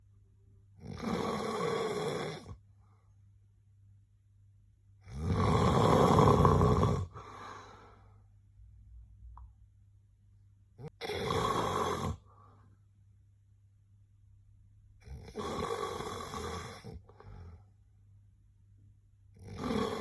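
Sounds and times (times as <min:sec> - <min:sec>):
man snoring: 0:00.8 - 0:02.5, 0:05.1 - 0:07.3, 0:10.9 - 0:12.2, 0:15.0 - 0:17.0, 0:19.4 - 0:20.0.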